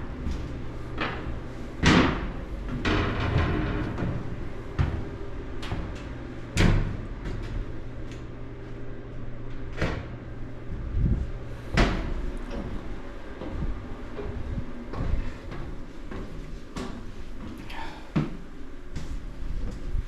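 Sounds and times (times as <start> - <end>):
low hum: 0.0 - 20.0
knocks and bangs: 1.8 - 5.1.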